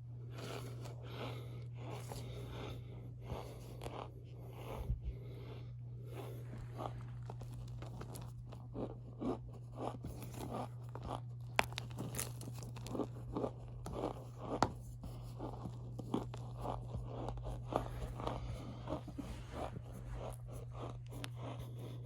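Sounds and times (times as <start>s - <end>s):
steady low hum: 0.0s - 22.0s
cornstarch squeaky crunches: 6.4s - 22.0s.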